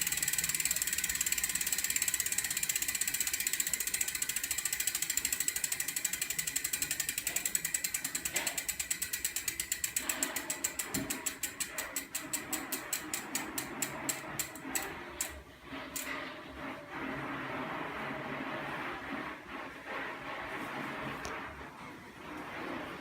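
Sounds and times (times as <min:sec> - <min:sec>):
bicycle hub ticking: 0:00.0 - 0:15.4.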